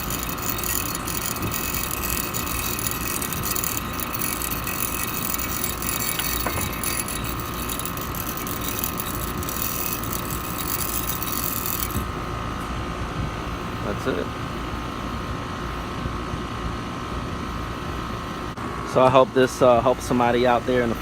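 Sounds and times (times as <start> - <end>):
check valve metallic rattle: 0.0 - 12.2
heat pump running hum: 0.0 - 21.0.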